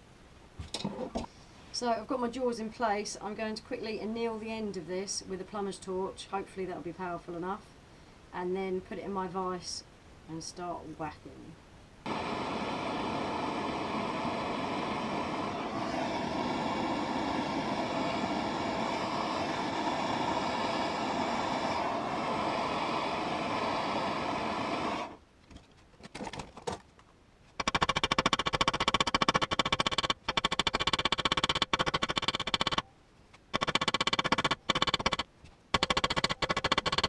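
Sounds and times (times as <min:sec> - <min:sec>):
gas torch hissing: 0:12.0 - 0:25.2.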